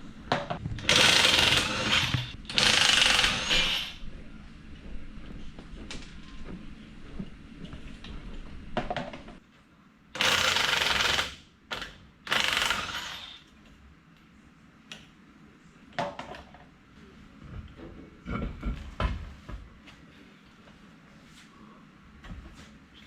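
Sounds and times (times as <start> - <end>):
impact wrench running: 0.7 - 4.0, 10.2 - 13.4.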